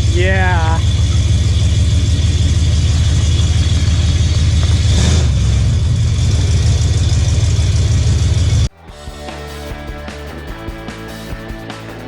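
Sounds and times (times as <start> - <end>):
truck engine idling: 0.0 - 8.7.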